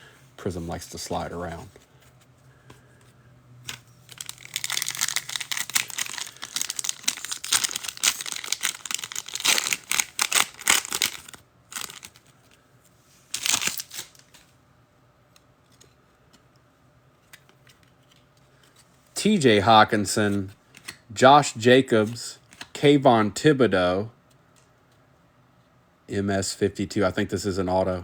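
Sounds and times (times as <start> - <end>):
foil wrapper tearing and crinkling: 3.7 - 12.3, 13.3 - 14.4.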